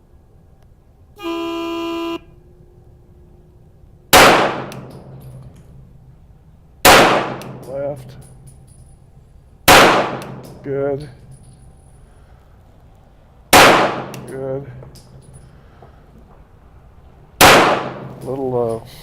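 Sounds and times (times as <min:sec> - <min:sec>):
start buzzer: 0:01.2 - 0:02.3
pistol shots echoing: 0:04.1 - 0:05.1, 0:06.8 - 0:07.7, 0:09.7 - 0:10.6, 0:13.5 - 0:14.3, 0:17.4 - 0:18.2.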